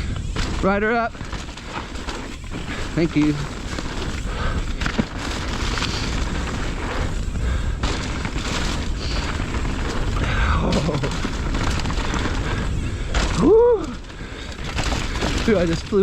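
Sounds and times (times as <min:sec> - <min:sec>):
bike rattling over bumps: 0:00.0 - 0:16.0
bike tyres rolling on dirt: 0:00.0 - 0:16.0.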